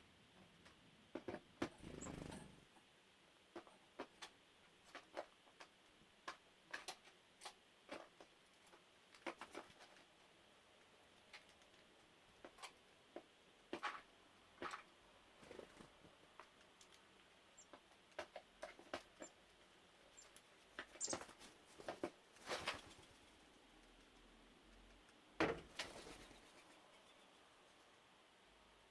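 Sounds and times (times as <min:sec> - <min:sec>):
birds pecking at dry food: 0:03.5 - 0:10.2, 0:11.1 - 0:26.9.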